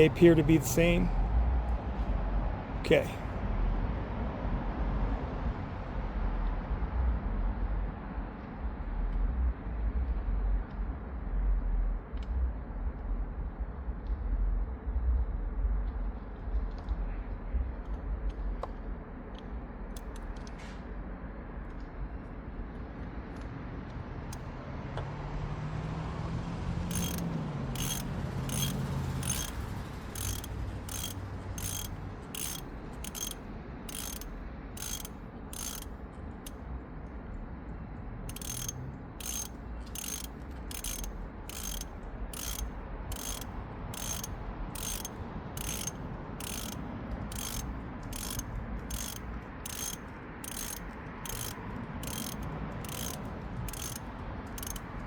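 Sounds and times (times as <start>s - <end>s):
ratchet wrench clicking: 26.9s - 36.0s, 38.3s - 55.0s.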